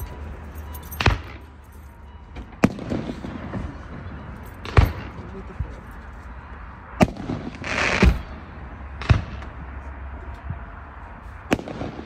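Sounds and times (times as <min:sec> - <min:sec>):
fireworks bangs: 0:11.5 - 0:12.0.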